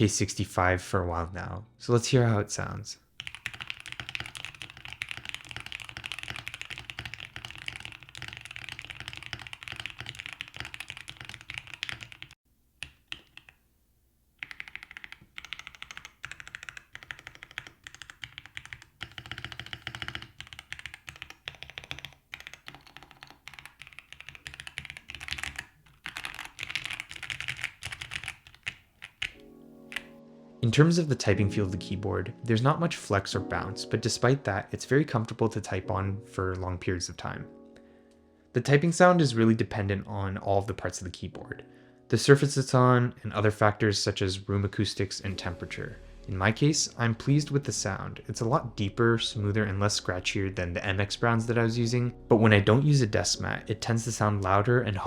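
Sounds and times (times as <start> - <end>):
mechanical keyboard typing: 3.2 - 13.6, 14.4 - 30.2.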